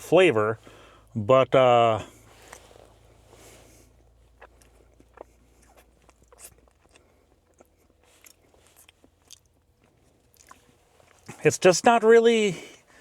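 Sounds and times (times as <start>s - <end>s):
person chewing: 2.1s - 11.4s.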